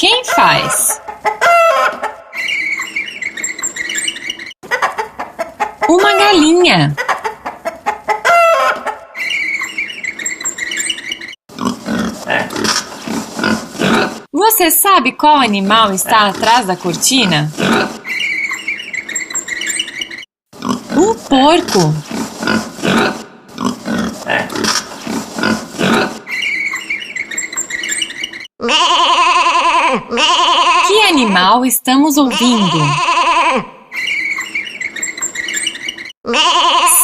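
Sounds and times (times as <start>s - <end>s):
pig grunting and oinking: 11.5s - 14.3s, 17.5s - 18.0s, 20.6s - 26.6s.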